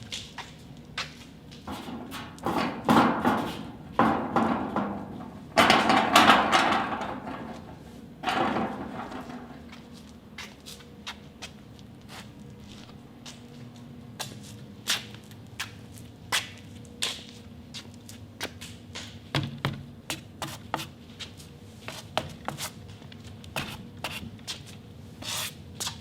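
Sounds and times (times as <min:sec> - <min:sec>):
soft scuffs or rustles: 0:09.6 - 0:18.8.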